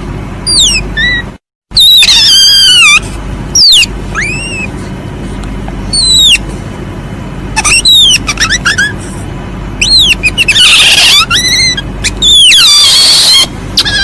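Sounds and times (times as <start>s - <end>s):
civet squealing: 0.4s - 4.9s, 5.9s - 6.5s, 7.6s - 9.2s, 9.8s - 14.0s.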